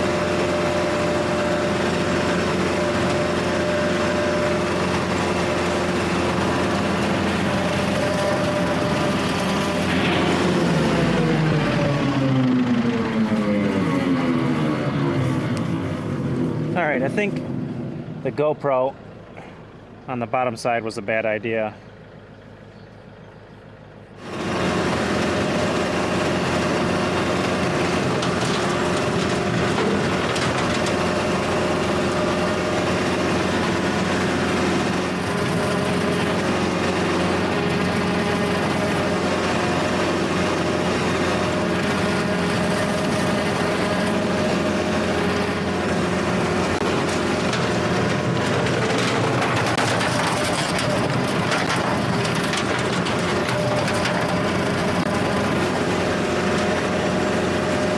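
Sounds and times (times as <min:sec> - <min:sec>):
tractor diesel engine running: 0:00.0 - 0:57.9.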